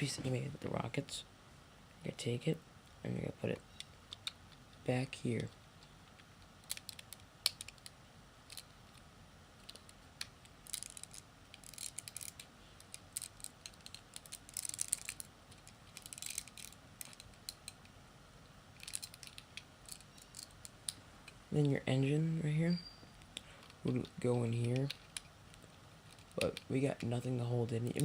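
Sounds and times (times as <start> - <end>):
plastic bricks clicking and clattering: 6.2 - 7.9, 9.6 - 17.9, 18.8 - 21.4.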